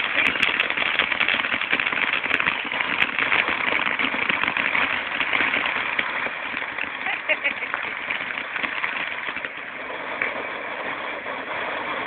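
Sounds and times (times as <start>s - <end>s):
fireworks crackling and hissing: 0.0s - 12.0s.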